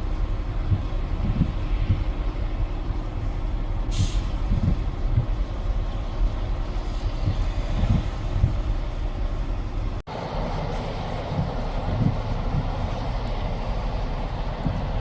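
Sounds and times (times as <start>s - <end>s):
vehicle rumble: 0.0s - 15.0s
brief hiss: 3.9s - 4.4s.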